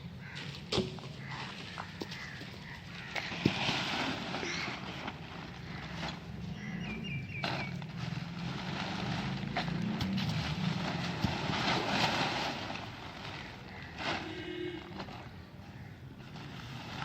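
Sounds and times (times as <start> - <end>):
engine running: 4.5 - 13.2.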